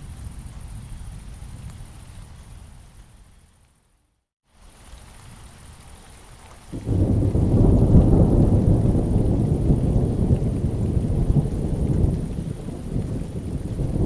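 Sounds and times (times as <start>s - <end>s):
steady rain: 0.0s - 14.0s
thunder rumbling: 6.8s - 14.0s.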